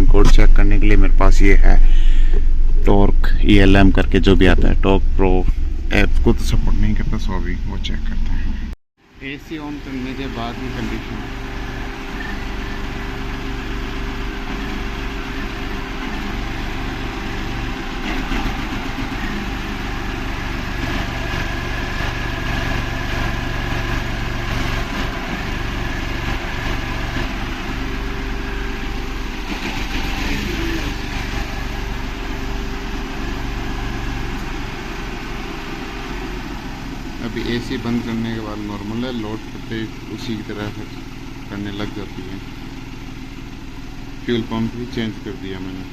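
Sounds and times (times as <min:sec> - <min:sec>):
car engine idling unevenly: 0:00.0 - 0:45.9.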